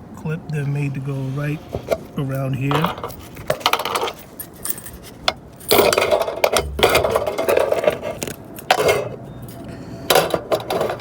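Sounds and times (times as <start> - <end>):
metal rattling scrape: 2.7 - 9.2.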